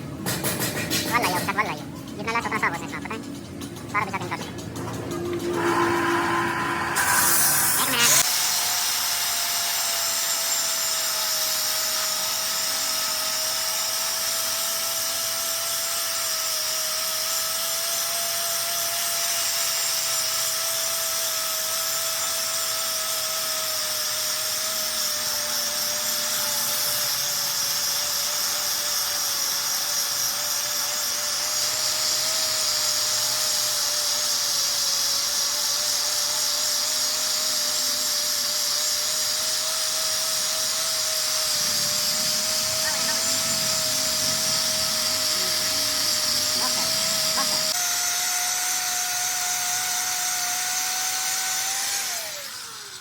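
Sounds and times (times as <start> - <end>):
power tool high whine: 0.7 - 53.0.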